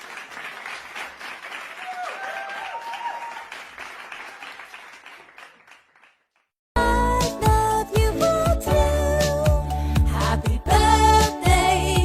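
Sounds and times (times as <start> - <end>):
children cheering and clapping: 0.0 - 6.4.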